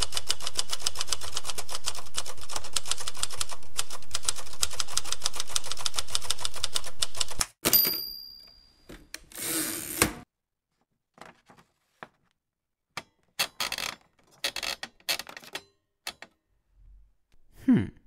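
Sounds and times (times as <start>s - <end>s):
typewriter bell ding: 7.6s - 8.9s.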